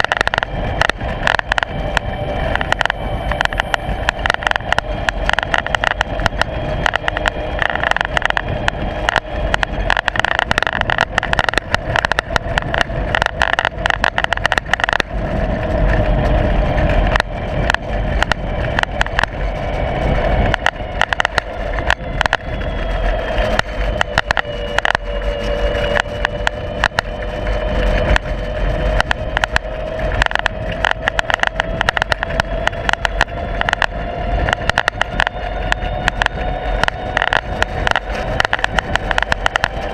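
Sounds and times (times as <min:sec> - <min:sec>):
steady drone: 0:00.0 - 0:39.9
camera mount rattling and knocking: 0:30.2 - 0:33.9, 0:37.2 - 0:39.7.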